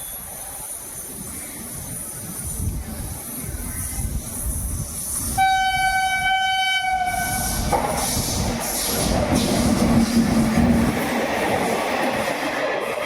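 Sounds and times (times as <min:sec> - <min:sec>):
low rumble of train: 0:00.0 - 0:13.0
locomotive horn blast: 0:05.4 - 0:07.6.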